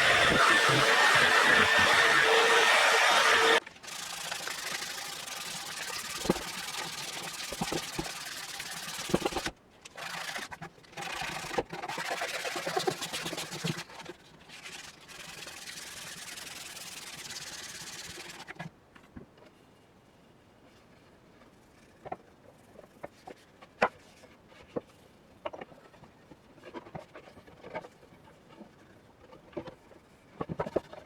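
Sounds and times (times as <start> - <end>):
abrasive rubbing on iron: 0.0 - 3.6.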